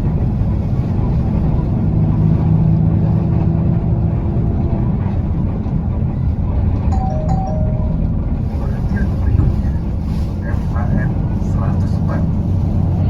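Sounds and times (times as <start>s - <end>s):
bus engine and road rumble: 0.0s - 13.0s
high-low electronic tone: 7.0s - 8.4s.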